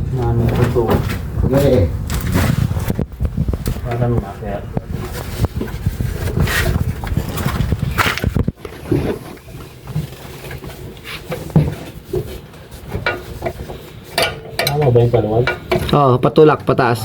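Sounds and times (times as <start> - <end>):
metal parts and tools clanking: 6.4 - 16.1.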